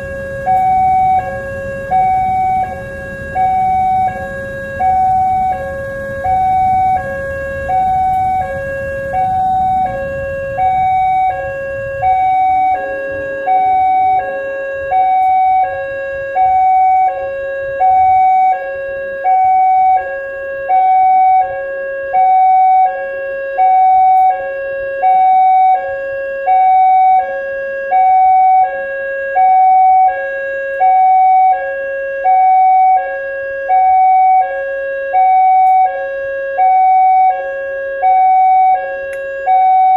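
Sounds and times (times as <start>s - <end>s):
low rumble: 0.0s - 18.5s
level crossing warning siren: 0.0s - 39.9s.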